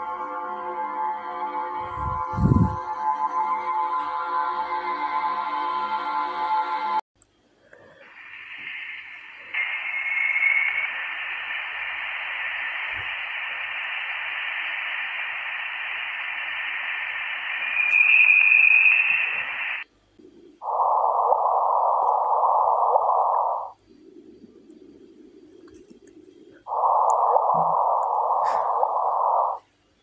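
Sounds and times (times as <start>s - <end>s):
radio static hiss: 7.7s - 30.0s.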